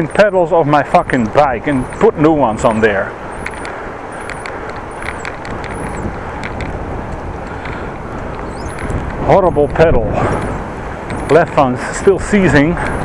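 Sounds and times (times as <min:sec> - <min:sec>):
bicycle rolling: 0:00.0 - 0:13.0
wind rushing over microphone: 0:00.0 - 0:13.0
faint high squeak: 0:01.0 - 0:06.1, 0:08.4 - 0:11.6.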